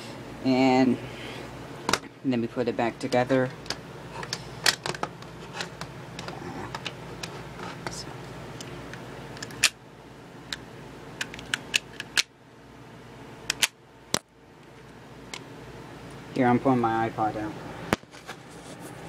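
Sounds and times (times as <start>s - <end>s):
plastic parts clicking and snapping: 11.2s - 12.3s, 13.5s - 14.2s.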